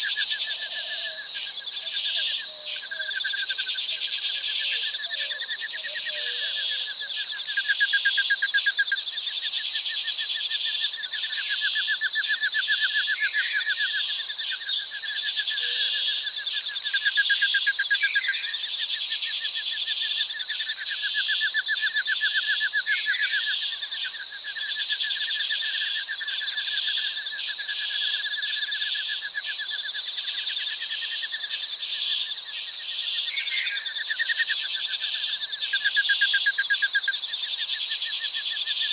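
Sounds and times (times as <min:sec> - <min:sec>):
insect chorus: 0:00.0 - 0:38.9.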